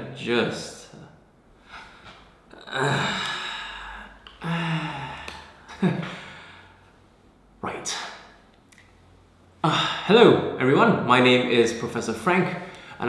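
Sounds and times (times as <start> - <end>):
short wordless vocal sounds: 1.7 - 6.6
man sighing: 1.7 - 6.8, 9.6 - 10.2.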